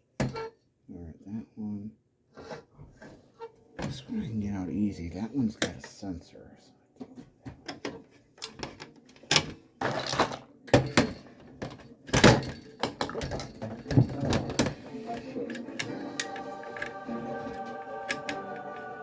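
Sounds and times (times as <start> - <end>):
hand tools clicking and knocking: 10.7 - 16.9.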